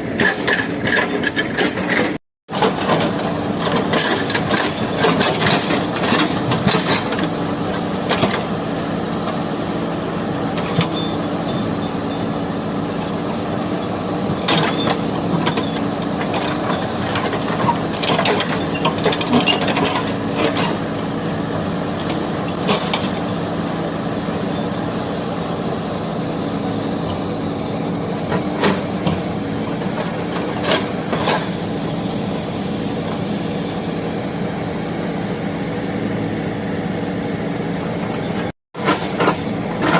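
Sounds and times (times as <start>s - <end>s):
diesel engine running: 0.0s - 39.9s
sharp metal clanks and knocks: 0.2s - 7.4s, 38.8s - 39.9s.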